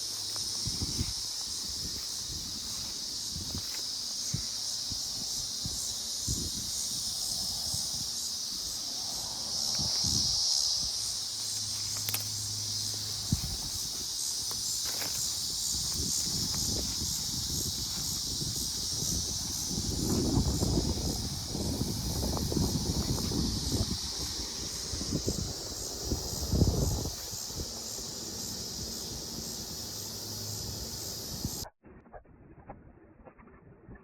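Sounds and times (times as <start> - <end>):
insects chirping: 0.0 - 31.7.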